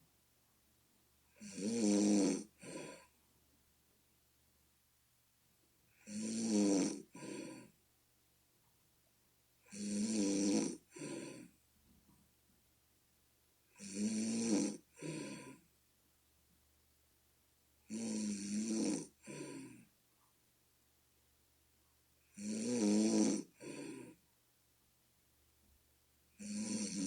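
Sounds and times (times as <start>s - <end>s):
person snoring: 1.4s - 3.1s, 6.0s - 7.7s, 9.7s - 11.5s, 13.7s - 15.6s, 17.9s - 19.8s, 22.3s - 24.2s, 26.4s - 27.0s.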